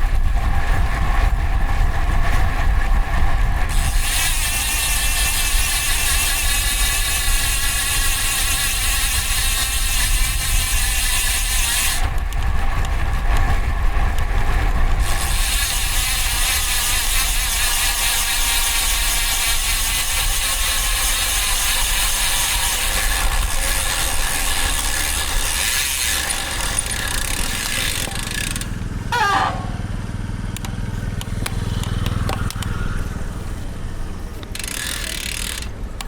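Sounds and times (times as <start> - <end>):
vehicle engine hum: 0.0 - 8.3, 11.6 - 16.5, 22.9 - 36.0
wind and road noise: 0.0 - 36.0
bicycle freewheel ticking: 3.7 - 28.8, 34.4 - 35.8
brief squeal: 29.1 - 29.9.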